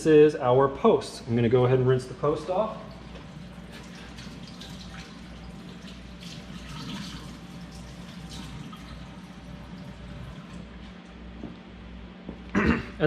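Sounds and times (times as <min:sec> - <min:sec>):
tap water running: 0:02.5 - 0:11.2.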